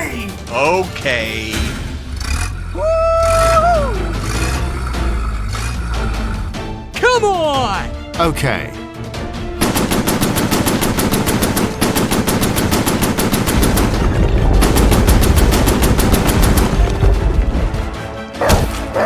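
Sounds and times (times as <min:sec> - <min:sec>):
deep rumble: 0:01.5 - 0:07.0, 0:13.3 - 0:18.2
rapid machine-gun fire: 0:09.6 - 0:18.0.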